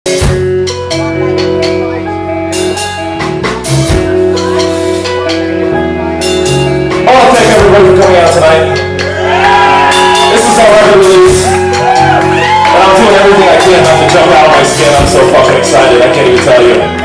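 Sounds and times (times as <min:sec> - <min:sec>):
live rock band playing: 0:00.0 - 0:17.0.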